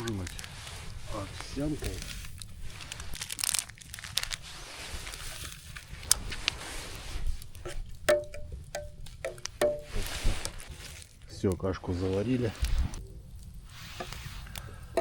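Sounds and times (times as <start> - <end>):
packet being torn and crinkled: 0.0 - 8.0, 9.3 - 11.3.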